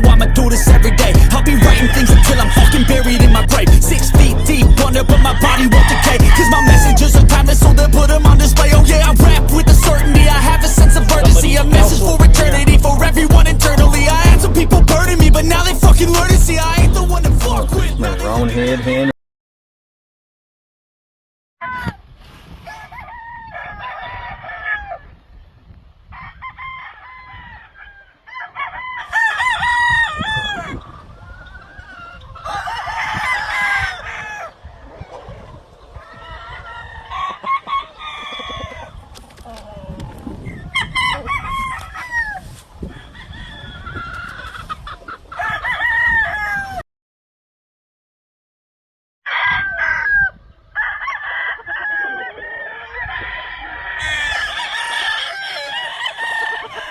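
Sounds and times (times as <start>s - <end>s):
chickens clucking: 0.0s - 8.8s, 17.4s - 19.1s, 29.8s - 45.6s, 51.3s - 56.9s
roosters crowing: 0.0s - 19.1s, 22.6s - 25.2s, 26.0s - 46.8s, 49.3s - 56.9s.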